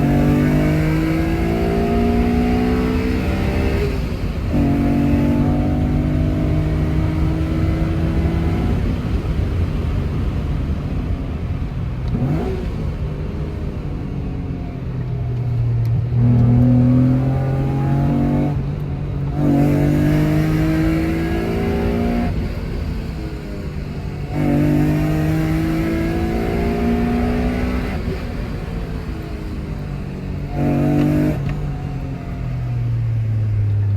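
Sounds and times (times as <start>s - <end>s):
car engine accelerating through gears: 0.0s - 33.9s.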